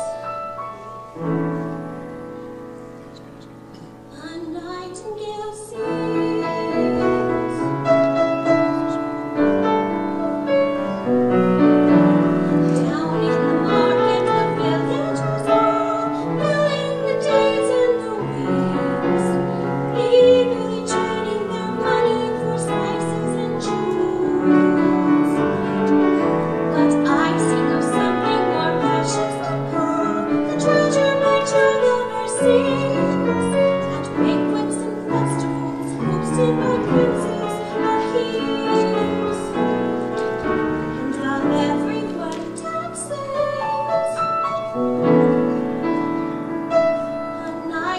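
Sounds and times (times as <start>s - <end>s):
piano accompaniment: 0.0s - 47.9s
operatic singer with vibrato: 4.1s - 9.8s, 12.1s - 44.4s.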